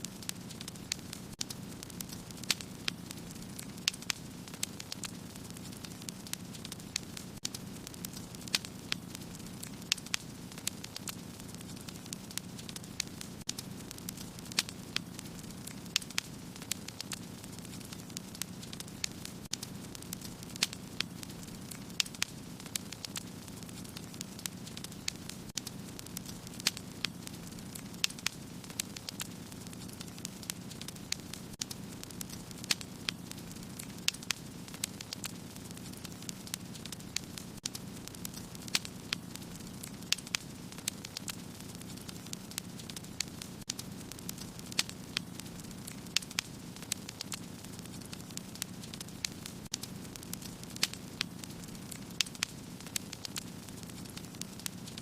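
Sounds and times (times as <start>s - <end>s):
burning logs crackling and popping: 0.0s - 55.0s.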